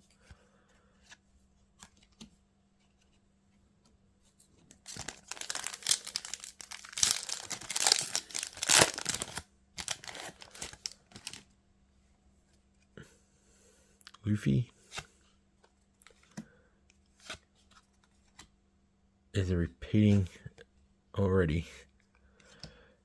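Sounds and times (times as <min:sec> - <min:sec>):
foil wrapper tearing and crinkling: 0:04.9 - 0:11.4.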